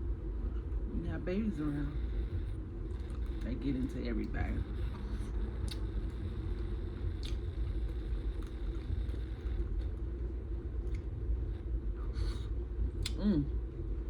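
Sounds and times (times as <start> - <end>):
low rumble: 0.0 - 14.0
chewing food: 2.8 - 13.2
mouth clicks and smacks: 5.6 - 6.2, 7.2 - 7.5, 13.0 - 13.2.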